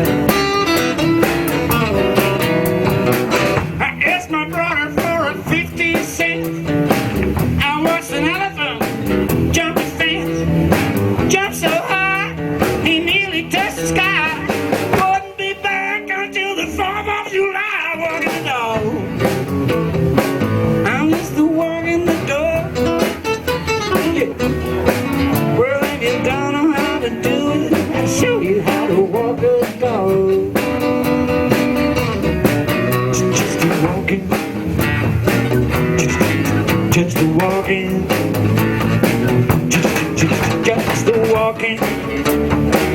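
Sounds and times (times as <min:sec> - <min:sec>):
lead instrument solo: 0:00.0 - 0:03.7
bass: 0:00.0 - 0:42.9
drums: 0:00.0 - 0:42.9
rhythm guitar: 0:00.0 - 0:42.9.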